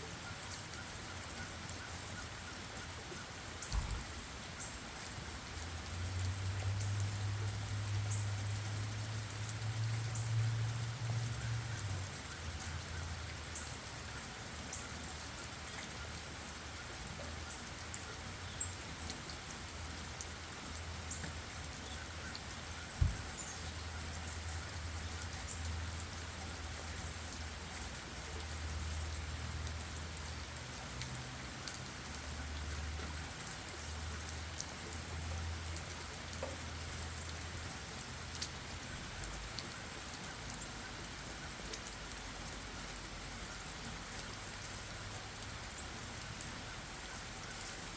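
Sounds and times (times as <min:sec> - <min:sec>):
light rain on leaves: 0:00.0 - 0:47.9
dull thump: 0:23.0 - 0:23.3.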